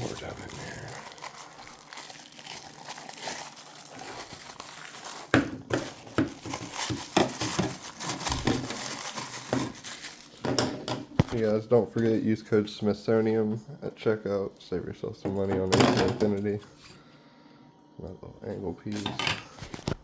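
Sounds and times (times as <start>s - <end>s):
plastic packaging crinkling: 0.0s - 12.3s
sharp crackles and knocks: 5.2s - 11.4s.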